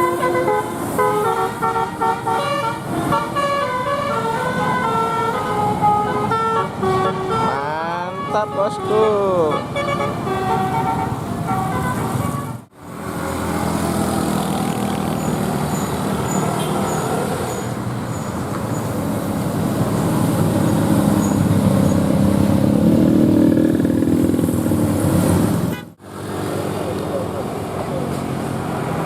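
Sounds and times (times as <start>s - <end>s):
musical bus horn: 0.0s - 12.7s, 25.7s - 26.0s
bus engine running: 9.6s - 29.0s.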